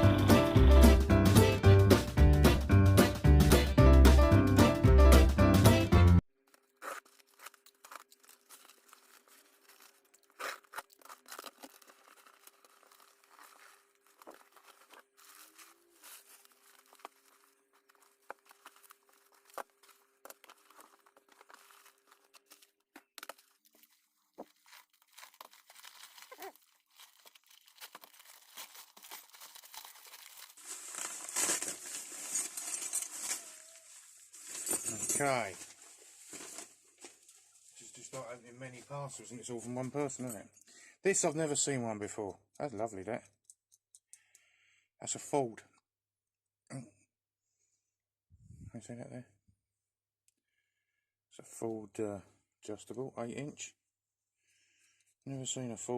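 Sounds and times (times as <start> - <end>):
packaging tearing and crinkling: 6.4 - 37.1.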